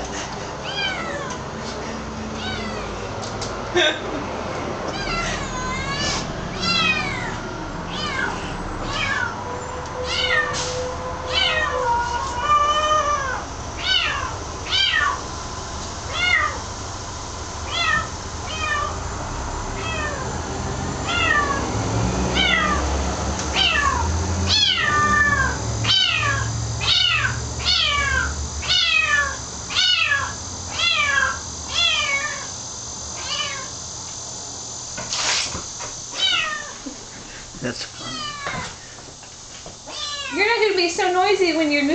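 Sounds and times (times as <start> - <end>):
kitten meowing: 0.6 - 1.4, 2.4 - 2.9, 4.9 - 9.3, 10.0 - 10.6, 11.3 - 15.2, 17.7 - 19.0, 19.8 - 20.2, 23.6 - 32.5, 36.2 - 36.8, 38.0 - 38.7, 39.9 - 40.4.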